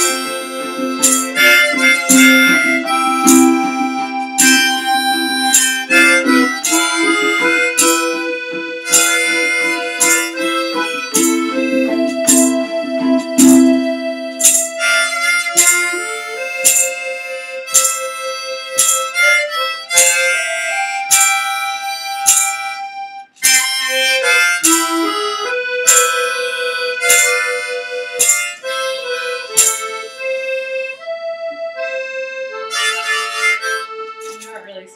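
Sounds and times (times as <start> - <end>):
acoustic guitar strumming: 0.0 - 22.8, 23.4 - 34.9
harmonica melody: 0.0 - 34.9.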